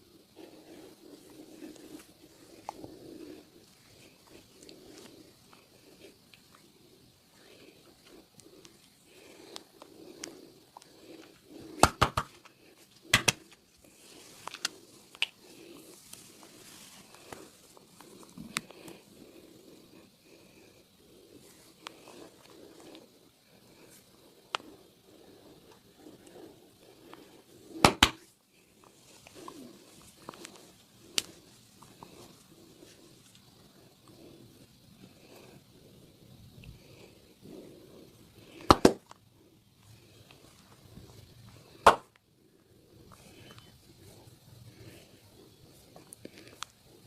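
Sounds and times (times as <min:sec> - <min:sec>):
hands rubbing skin and clothing: 0:00.4 - 0:34.4
sharp snaps: 0:08.0 - 0:19.0, 0:24.4 - 0:24.8, 0:27.0 - 0:32.4, 0:38.4 - 0:39.2, 0:41.8 - 0:42.3
sharp joint cracks: 0:13.1 - 0:13.6, 0:27.8 - 0:28.3, 0:38.6 - 0:39.2.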